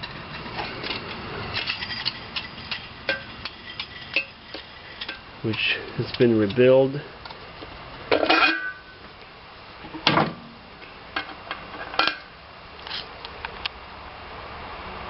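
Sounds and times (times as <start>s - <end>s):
light metallic clinks and knocks: 0.0s - 9.1s.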